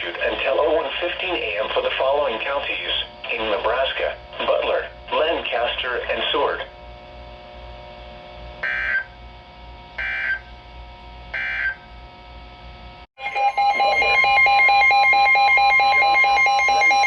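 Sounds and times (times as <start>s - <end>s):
pulsing electronic alert tone: 8.6s - 9.2s, 10.0s - 10.5s, 11.4s - 11.8s, 13.2s - 17.0s
data bursts: 13.2s - 17.0s.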